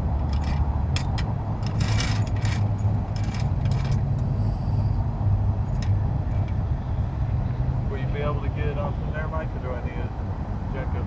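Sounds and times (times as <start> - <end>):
metallic clinks and rattles: 0.2 - 4.2.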